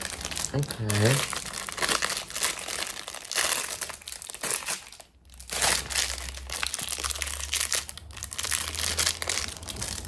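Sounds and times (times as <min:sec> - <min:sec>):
crinkly packaging crumpled: 0:00.0 - 0:10.0.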